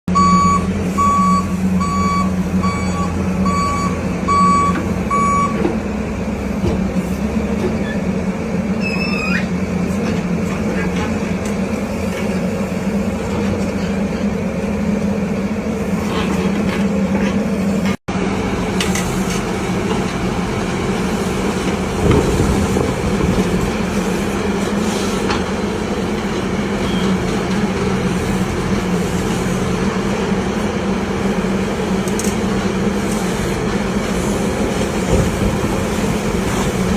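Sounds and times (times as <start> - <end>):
reversing alarm beeping: 0.1 - 5.7
diesel engine running: 0.1 - 36.9
short squeal: 8.8 - 9.6.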